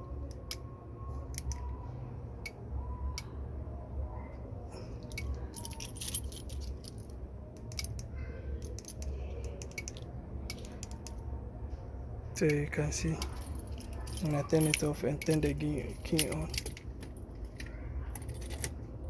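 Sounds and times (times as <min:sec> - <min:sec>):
low steady hum: 0:00.0 - 0:19.0
car keys jangling and clicking: 0:01.3 - 0:01.8, 0:05.0 - 0:11.4, 0:12.4 - 0:19.0.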